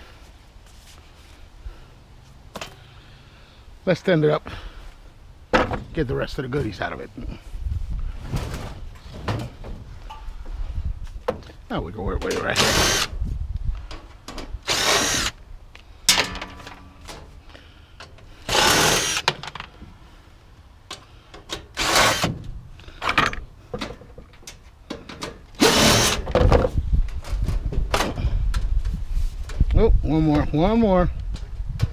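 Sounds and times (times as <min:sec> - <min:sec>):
power drill bursts: 0:12.5 - 0:13.1, 0:14.6 - 0:15.4, 0:18.4 - 0:19.3, 0:21.8 - 0:22.3, 0:25.6 - 0:26.3.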